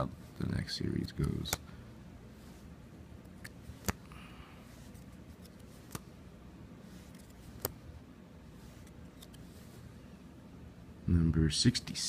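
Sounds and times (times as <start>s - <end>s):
steady low hum: 0.0s - 12.0s
cards rustling: 0.5s - 1.6s, 2.3s - 10.0s
cards clicking: 0.9s - 1.6s, 3.2s - 4.1s, 4.9s - 6.2s, 7.0s - 7.9s, 8.5s - 9.6s.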